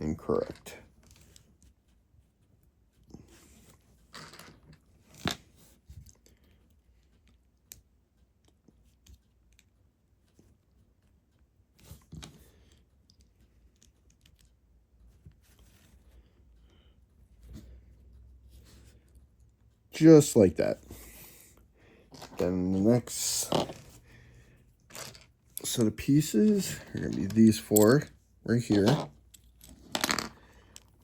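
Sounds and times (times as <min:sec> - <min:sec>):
plastic pieces rustling: 0:24.8 - 0:28.0.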